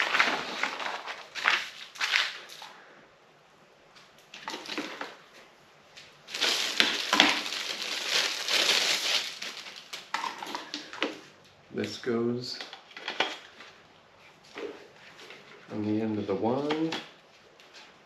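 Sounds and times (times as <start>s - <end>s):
plastic packaging crinkling: 0.0s - 2.7s, 6.3s - 11.0s.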